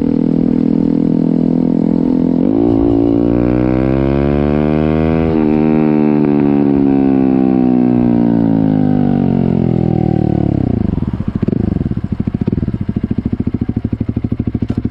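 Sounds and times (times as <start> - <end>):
motorcycle engine revs falling: 1.3 - 8.4
motorcycle engine lumpy idle: 10.1 - 14.9.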